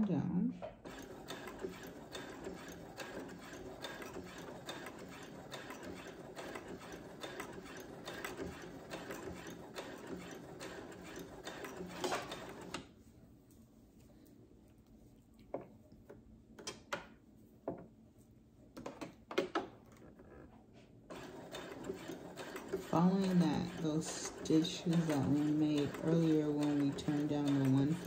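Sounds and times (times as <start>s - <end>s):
sewing machine stitching: 0.8s - 12.9s, 21.1s - 28.0s.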